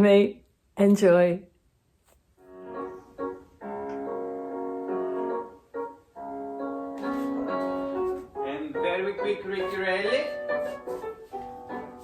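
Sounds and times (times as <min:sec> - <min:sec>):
piano chords: 0:02.4 - 0:12.0.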